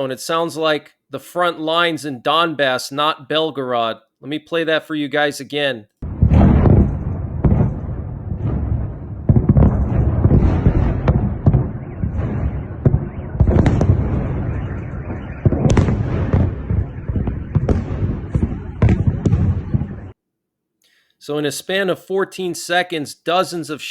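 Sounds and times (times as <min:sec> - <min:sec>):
rolling rumble: 0:06.0 - 0:20.1
explosions booming: 0:06.0 - 0:20.2.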